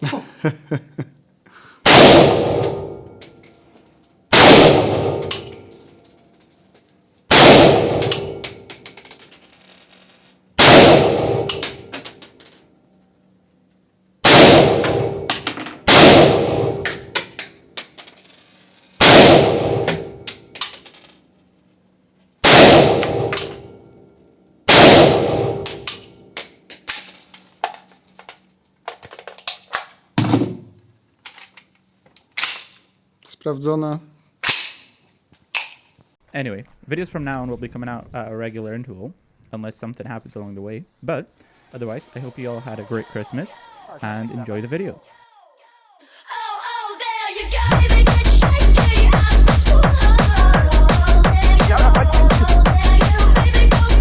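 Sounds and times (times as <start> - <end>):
gunshots: 1.9 - 3.0, 4.3 - 5.6, 7.3 - 8.6, 10.6 - 11.9, 14.2 - 17.2, 19.0 - 20.2, 22.4 - 23.7, 24.7 - 26.0
small metallic clicks and clinks: 5.2 - 7.2.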